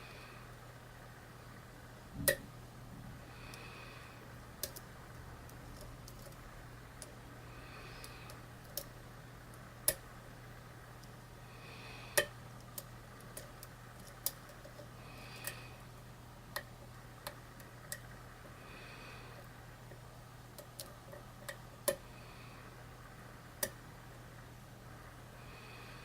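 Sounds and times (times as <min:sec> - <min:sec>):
soft breathing: 0:00.0 - 0:00.6, 0:02.9 - 0:09.8, 0:10.6 - 0:13.5, 0:14.6 - 0:16.9, 0:17.8 - 0:20.0, 0:21.0 - 0:23.8, 0:24.9 - 0:26.0.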